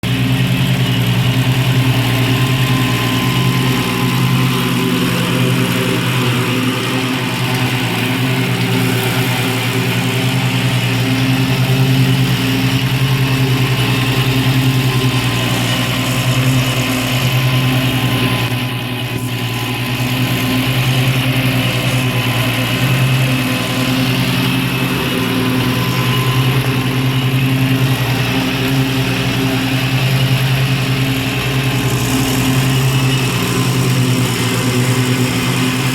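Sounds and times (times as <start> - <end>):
tractor engine running: 0.0 - 35.9.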